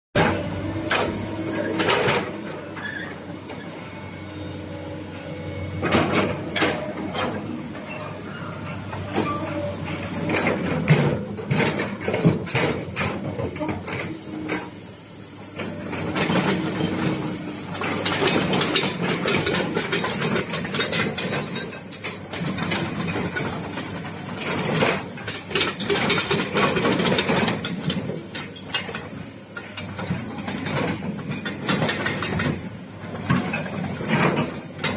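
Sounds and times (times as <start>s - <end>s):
excavator engine whining: 0.2s - 34.9s
metallic clanks and knocks: 9.0s - 14.7s.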